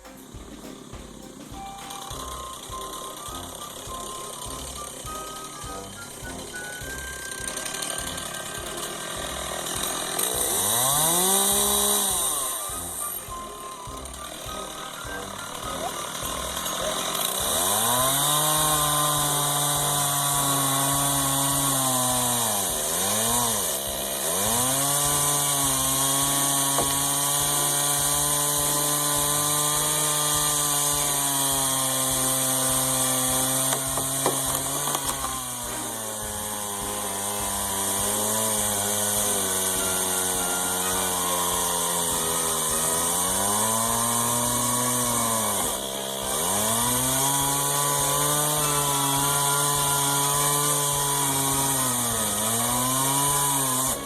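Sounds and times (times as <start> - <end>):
chainsaw cutting wood: 0.0 - 54.0.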